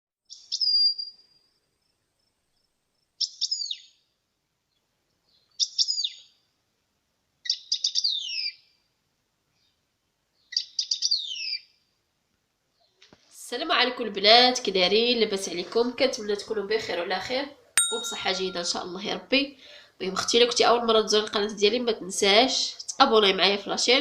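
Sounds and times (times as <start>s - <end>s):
songbird singing: 0.3s - 1.6s, 2.5s - 4.1s, 4.7s - 6.4s, 7.4s - 8.8s, 9.6s - 11.7s, 17.8s - 19.0s.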